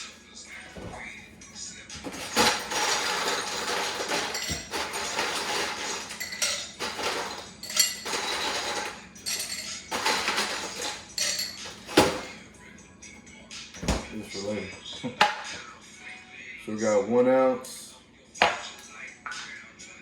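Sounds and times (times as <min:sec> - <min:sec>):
utensils and glassware clinking: 0:02.0 - 0:12.5.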